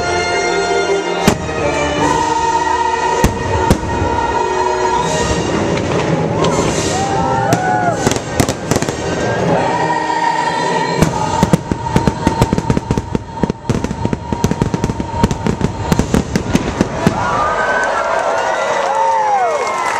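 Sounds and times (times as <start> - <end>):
show music holding a long note: 0.0 - 17.2
fireworks exploding: 3.1 - 9.4, 11.0 - 17.9.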